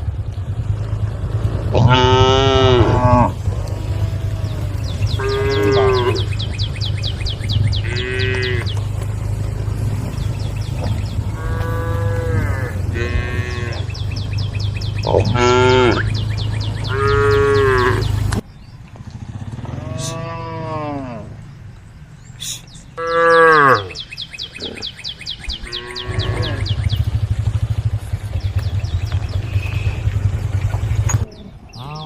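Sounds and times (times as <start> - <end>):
cattle mooing: 1.7 - 8.8, 10.0 - 14.3, 14.9 - 18.2, 19.6 - 21.4, 23.0 - 24.0, 25.6 - 26.8, 31.8 - 32.0.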